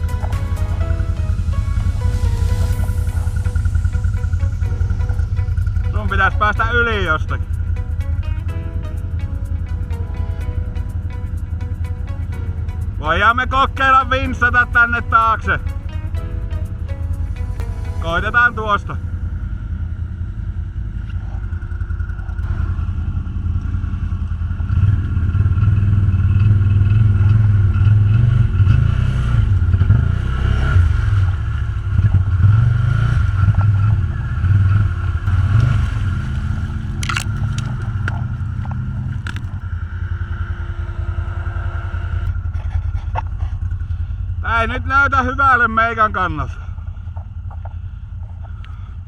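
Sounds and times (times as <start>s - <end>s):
atv engine running: 0.0s - 49.0s
scraping and crunching: 35.2s - 39.6s
sharp clicks: 35.6s - 39.6s.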